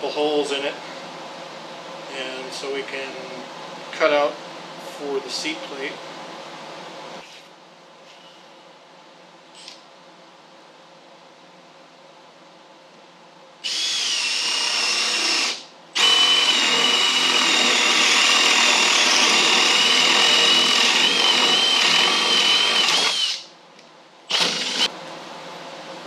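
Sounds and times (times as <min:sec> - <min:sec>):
power drill whining: 0:13.6 - 0:23.4, 0:24.3 - 0:24.9.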